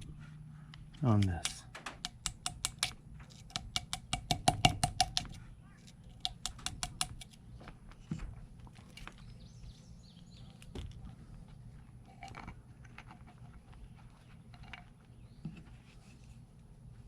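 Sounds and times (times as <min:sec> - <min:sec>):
metal tool tapping rust: 0:01.2 - 0:05.4, 0:06.1 - 0:07.4.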